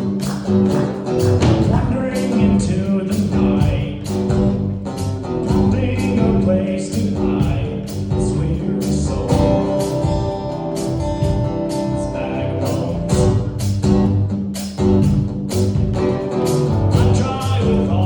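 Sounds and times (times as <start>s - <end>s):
person singing: 0.0s - 4.3s, 5.5s - 10.9s, 11.7s - 13.4s, 16.9s - 18.0s
guitar: 0.0s - 18.0s
steady drum beat: 0.0s - 18.0s.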